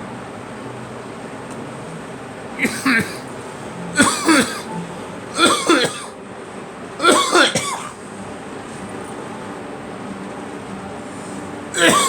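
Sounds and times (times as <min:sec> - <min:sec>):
person coughing: 0:02.6 - 0:03.3, 0:04.0 - 0:04.7, 0:05.3 - 0:06.1, 0:07.0 - 0:08.0, 0:11.8 - 0:12.0.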